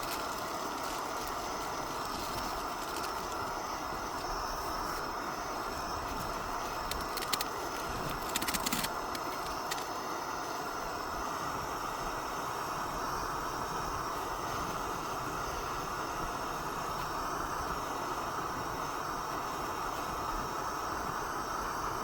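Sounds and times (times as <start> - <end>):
steady rushing noise: 0.0 - 10.6.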